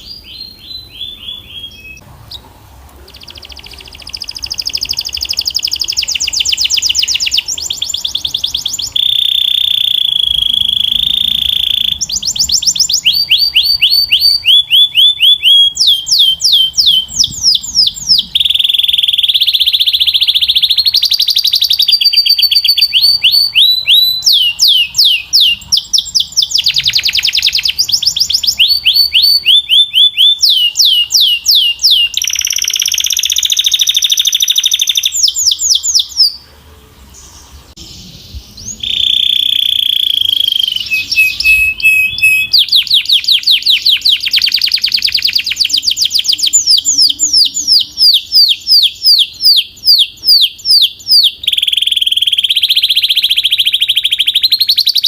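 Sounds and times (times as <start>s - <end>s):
canary singing trills: 0.0s - 55.0s.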